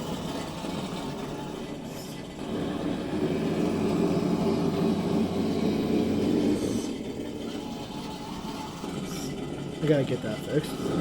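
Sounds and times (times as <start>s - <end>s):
simulated engine rumble: 0.0s - 11.0s.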